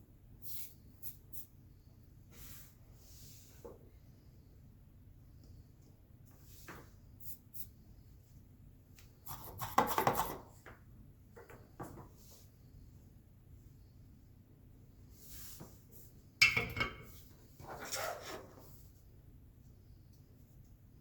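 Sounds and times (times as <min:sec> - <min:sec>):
tools scraping and tapping: 0:16.4 - 0:17.2.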